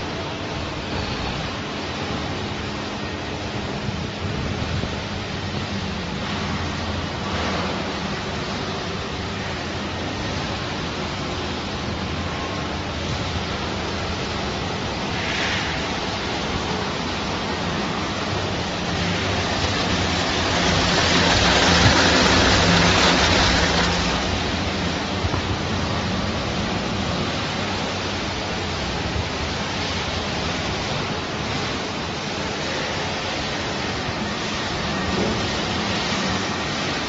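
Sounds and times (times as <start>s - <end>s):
factory machinery rushing: 3.6s - 33.2s.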